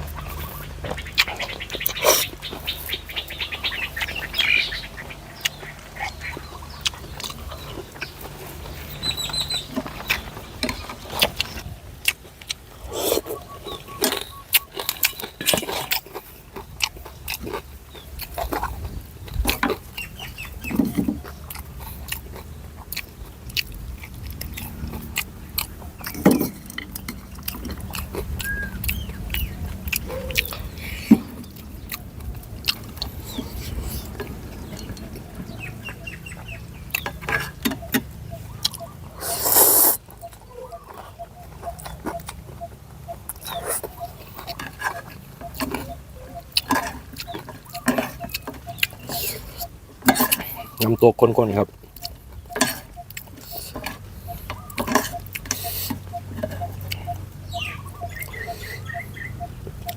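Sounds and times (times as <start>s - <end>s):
mouth smacking and chewing: 0.0s - 59.9s
slurping noodle soup: 39.2s - 40.1s.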